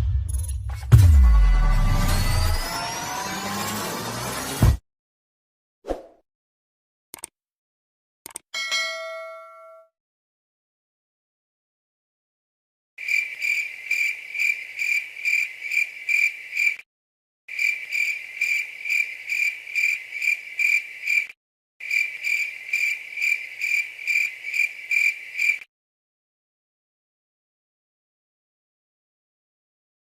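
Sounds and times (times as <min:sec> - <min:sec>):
cricket chirping: 0:13.0 - 0:16.8, 0:17.5 - 0:25.7.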